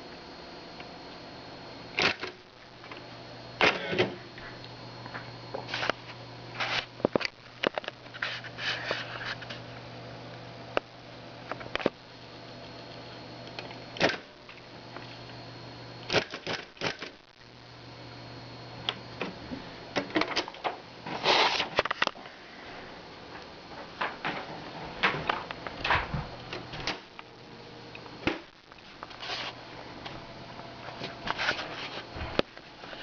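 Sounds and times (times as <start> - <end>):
typewriter motor hum: 1.9 - 3.0, 16.0 - 17.3.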